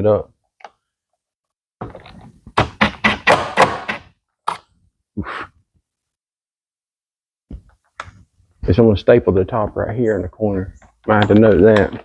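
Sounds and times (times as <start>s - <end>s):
tools knocking and rattling: 10.8s - 12.0s.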